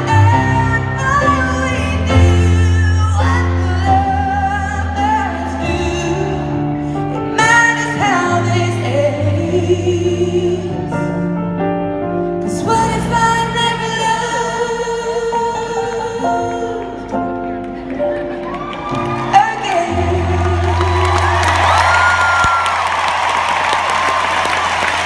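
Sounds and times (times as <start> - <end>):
woman singing: 0.0 - 10.9, 12.4 - 17.2, 19.0 - 22.6.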